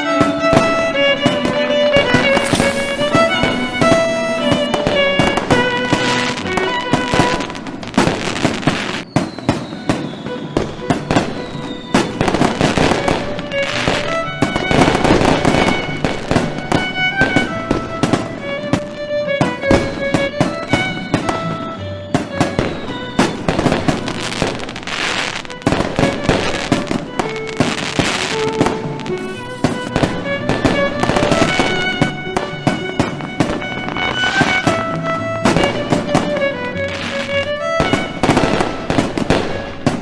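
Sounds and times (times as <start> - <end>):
background music with strings: 0.0 - 40.0
fireworks crackling and bursting: 0.0 - 40.0
firework whistles falling: 0.1 - 40.0.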